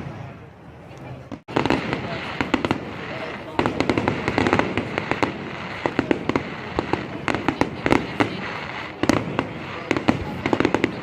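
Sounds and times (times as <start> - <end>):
distant fireworks hiss: 0.0 - 11.0
fireworks bangs and crackles: 1.0 - 11.0.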